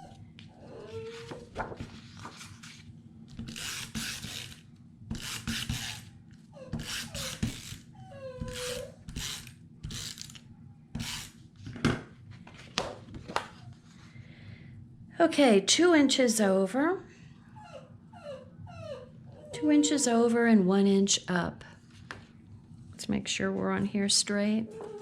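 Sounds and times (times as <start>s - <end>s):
dog whimpering: 0.0s - 1.5s, 6.5s - 9.1s, 17.5s - 20.1s, 24.6s - 25.0s.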